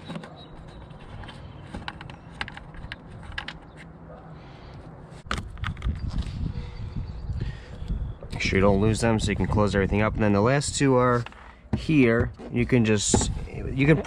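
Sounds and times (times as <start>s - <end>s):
plastic fasteners clicking: 0.0s - 3.9s
rubbing and handling noise: 0.0s - 6.4s, 10.8s - 14.0s.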